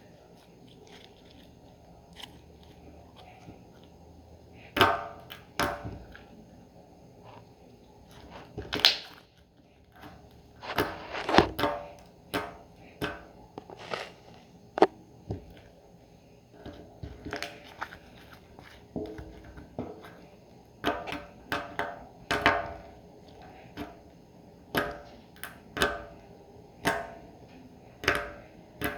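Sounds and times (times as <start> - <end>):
slime squishing with pops: 0.3 - 3.9, 8.0 - 9.4, 10.1 - 15.6.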